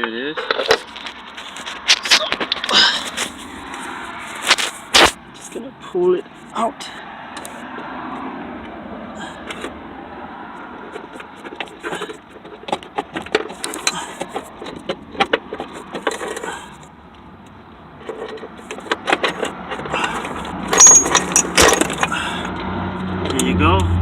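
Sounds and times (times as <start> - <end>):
clicks and metallic rattles: 0.0 - 3.4, 10.8 - 22.2
cable clattering free: 18.1 - 22.2.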